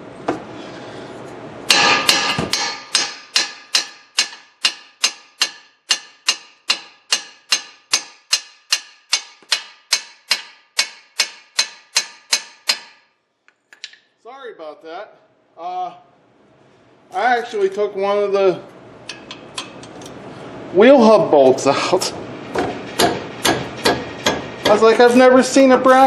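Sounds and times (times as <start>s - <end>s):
hammer striking metal: 1.7s - 13.2s, 19.1s - 20.1s, 22.5s - 26.0s.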